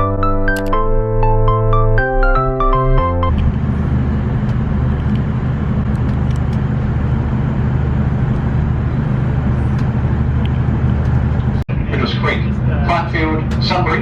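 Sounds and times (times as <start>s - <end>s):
train rumble inside carriage: 3.3s - 14.0s.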